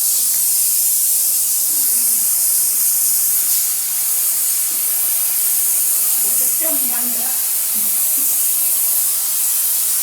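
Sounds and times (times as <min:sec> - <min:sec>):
steam jet hissing: 0:00.0 - 0:10.0.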